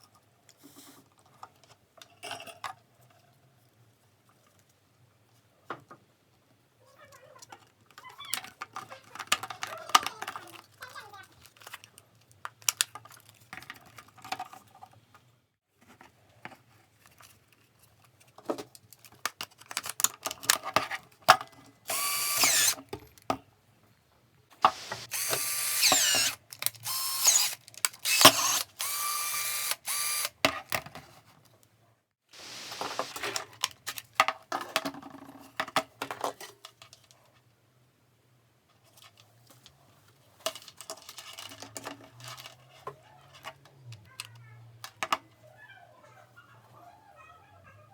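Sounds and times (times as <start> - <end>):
cordless drill whining: 21.9 - 22.8, 24.6 - 30.3, 32.4 - 33.2.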